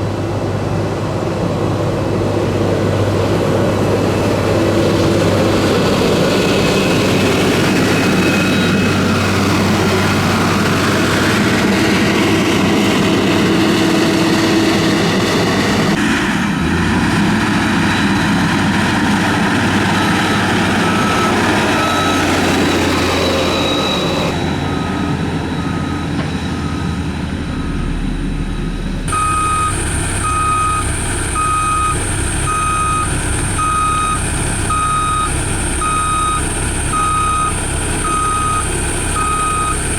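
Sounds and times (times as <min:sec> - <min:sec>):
diesel engine of heavy machinery: 0:00.0 - 0:39.9
reversing alarm beeping: 0:19.7 - 0:39.9.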